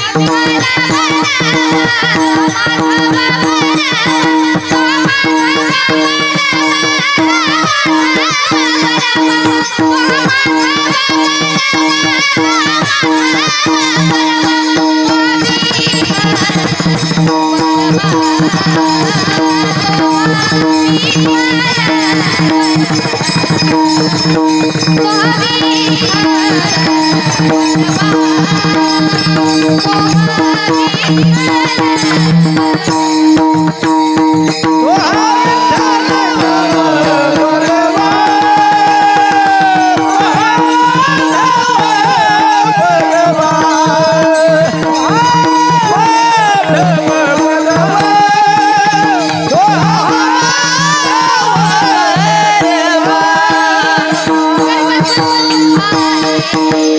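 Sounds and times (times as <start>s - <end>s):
dense hand drumming: 0.0s - 56.2s
jingling hand cymbals: 0.0s - 56.9s
person singing high melody: 34.8s - 56.8s.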